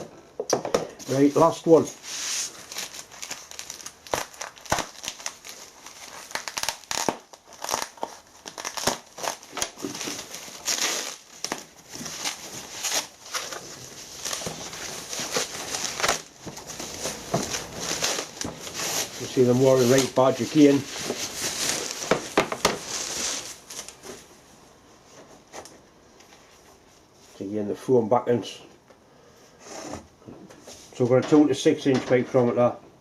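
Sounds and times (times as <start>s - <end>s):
packaging crinkling and rustling: 1.0s - 24.3s.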